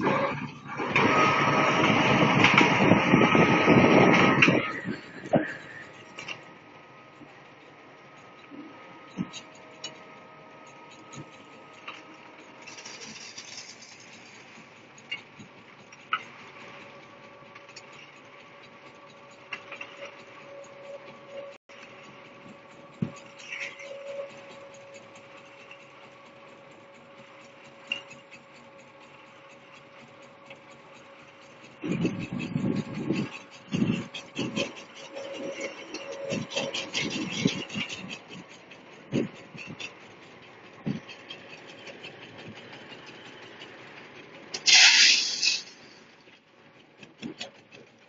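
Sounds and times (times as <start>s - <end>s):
clanks and rattles: 0.0s - 48.0s
concrete mixer humming: 0.0s - 48.0s
hissing noise: 44.6s - 46.1s.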